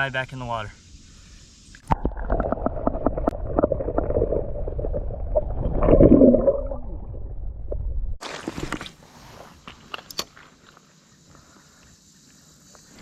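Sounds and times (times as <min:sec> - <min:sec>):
water gurgling underwater: 0:01.8 - 0:08.6.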